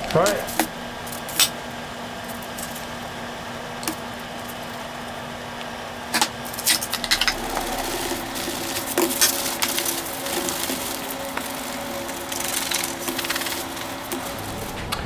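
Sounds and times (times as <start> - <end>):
low workshop hum: 0.0 - 15.0.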